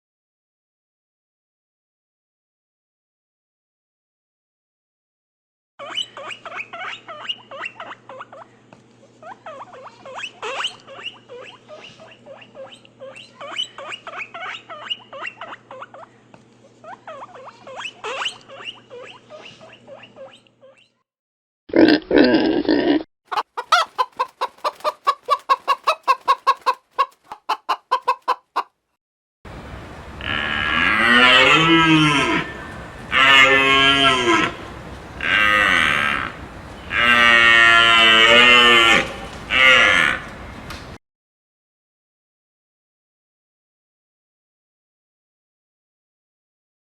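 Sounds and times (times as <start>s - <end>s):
chickens clucking: 23.3s - 28.7s, 29.8s - 41.0s
loud animal call: 30.0s - 40.6s
cattle mooing: 30.1s - 40.4s.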